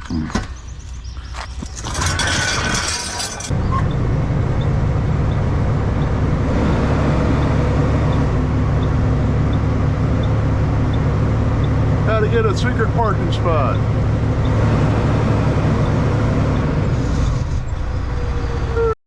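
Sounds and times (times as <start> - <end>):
diesel truck engine running: 0.0 - 18.9
clattering and knocks: 1.4 - 3.6.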